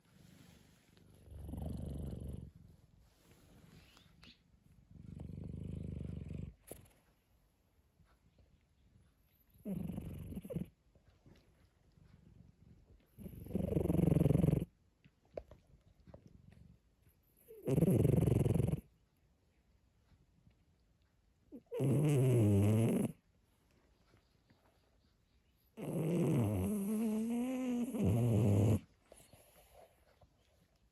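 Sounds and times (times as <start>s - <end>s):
cat snoring: 0.2s - 2.8s, 4.9s - 7.0s, 9.6s - 10.7s, 13.1s - 14.7s, 17.4s - 18.9s, 21.6s - 23.2s, 25.8s - 29.9s.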